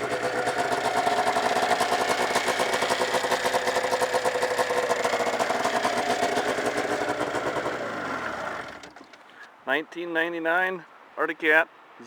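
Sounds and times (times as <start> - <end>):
snowmobile engine idling: 0.0 - 8.8.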